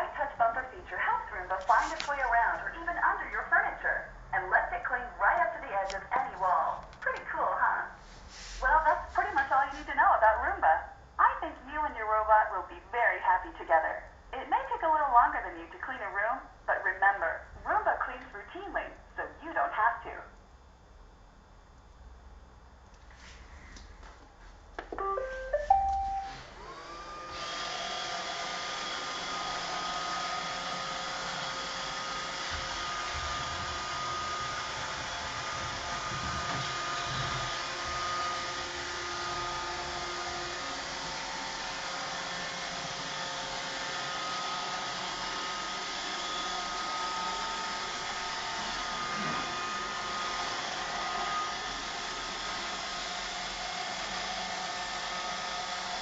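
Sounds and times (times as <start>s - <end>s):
robot vacuum start-up beeps: 25.0s - 26.5s
vacuum motors whirring hum: 26.3s - 56.0s.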